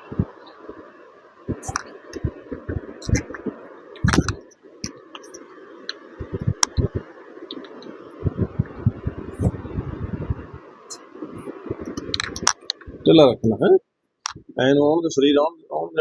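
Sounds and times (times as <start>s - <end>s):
background hiss: 0.0s - 16.0s.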